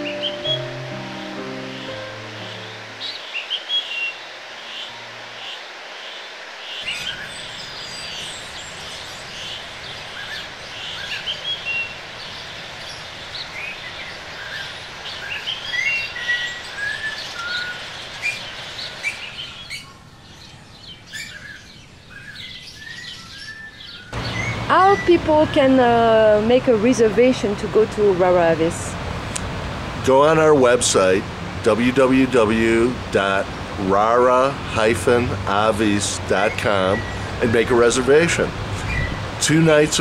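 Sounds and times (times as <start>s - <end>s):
music: 0.0s - 3.1s
birds chirping and whistling: 0.0s - 5.6s, 6.7s - 26.4s, 35.1s - 40.0s
steady background hiss: 0.0s - 40.0s.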